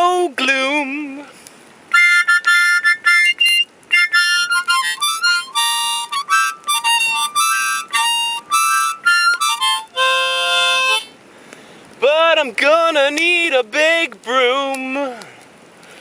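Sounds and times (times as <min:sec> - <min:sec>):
harmonica chords and notes: 0:01.9 - 0:11.1.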